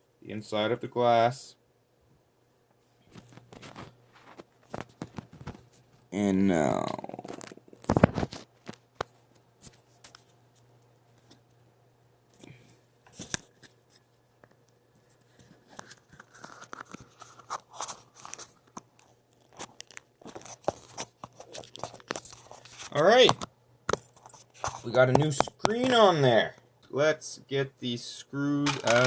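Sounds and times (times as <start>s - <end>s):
plastic parts clicking and scraping: 15.0s - 26.0s, 28.6s - 29.0s.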